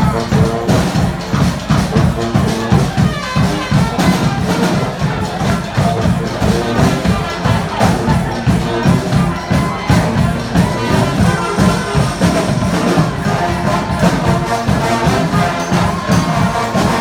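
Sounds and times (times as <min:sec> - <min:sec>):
drums and percussion beat: 0:00.0 - 0:17.0
sustained pitched instrument notes: 0:04.7 - 0:17.0.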